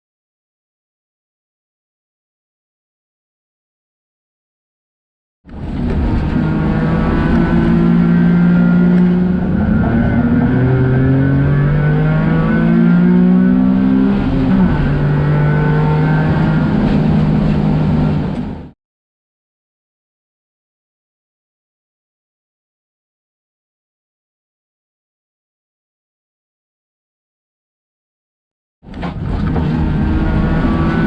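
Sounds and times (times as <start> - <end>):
car engine shifting up: 5.5 - 18.7, 28.9 - 31.0
road noise: 5.5 - 18.7, 28.8 - 31.0.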